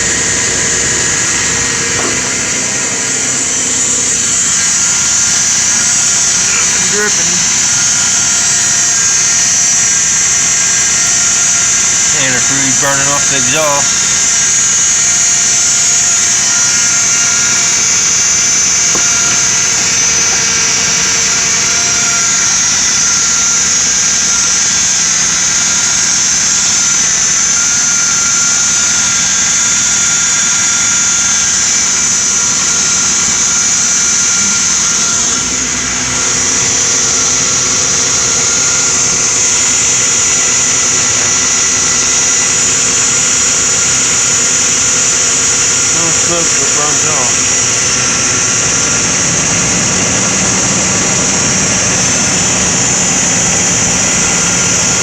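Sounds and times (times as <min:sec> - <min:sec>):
steady high hiss: 0:01.4 - 0:24.7, 0:42.5 - 0:55.0.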